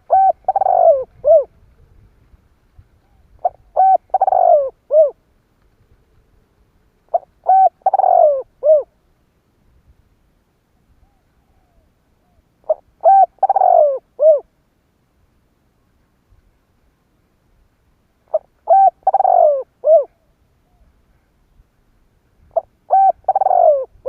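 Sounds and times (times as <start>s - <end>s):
dove cooing: 0.0s - 2.1s, 3.0s - 5.2s, 7.1s - 9.0s, 11.0s - 14.5s, 18.3s - 20.9s, 22.5s - 24.0s.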